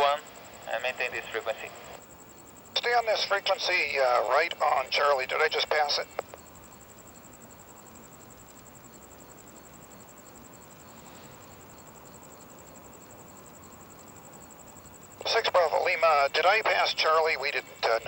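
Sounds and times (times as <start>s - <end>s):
radio feed hiss: 0.0s - 7.5s, 10.7s - 12.0s, 13.7s - 18.0s.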